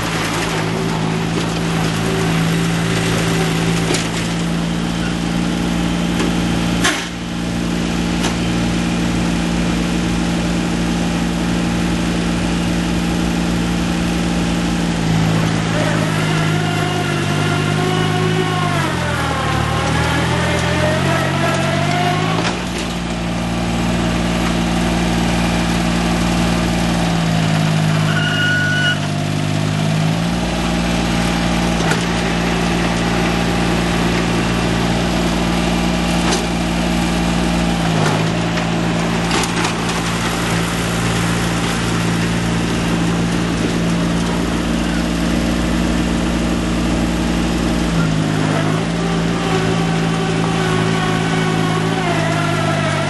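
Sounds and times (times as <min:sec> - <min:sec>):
tractor diesel engine running: 0:00.0 - 0:53.0.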